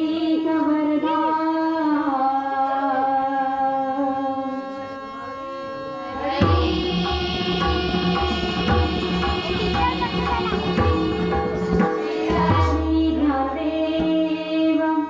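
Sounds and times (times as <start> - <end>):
harmonium: 0.0 - 15.0
tabla rhythm: 6.2 - 14.7
person singing: 6.2 - 15.0.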